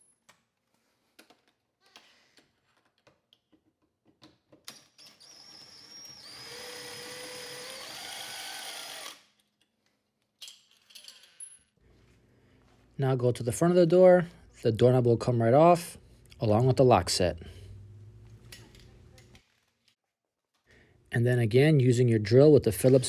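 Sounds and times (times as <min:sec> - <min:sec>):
power drill whining: 0:04.9 - 0:09.3.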